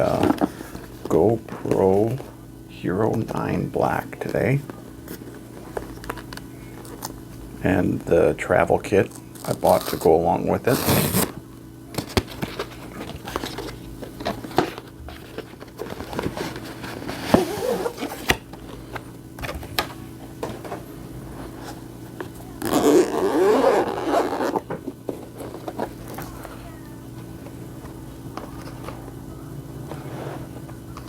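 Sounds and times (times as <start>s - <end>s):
packaging rustling and crinkling: 9.3s - 29.2s.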